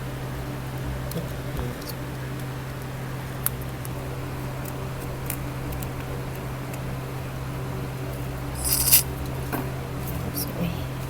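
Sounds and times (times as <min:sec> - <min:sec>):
small tools clicking: 0:08.6 - 0:09.0.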